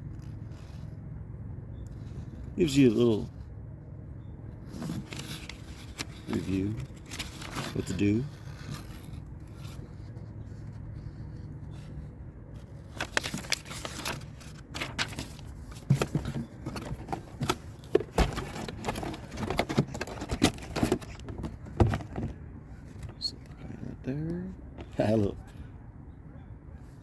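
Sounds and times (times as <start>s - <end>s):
low steady hum: 0.0s - 27.0s
cardboard packaging crinkling: 4.7s - 10.9s, 12.6s - 22.3s.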